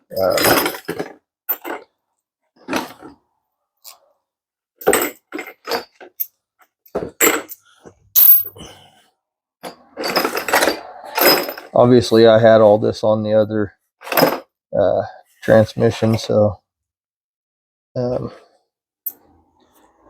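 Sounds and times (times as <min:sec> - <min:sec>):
metal parts clinking: 0:00.0 - 0:01.8, 0:06.9 - 0:08.6, 0:09.6 - 0:11.7.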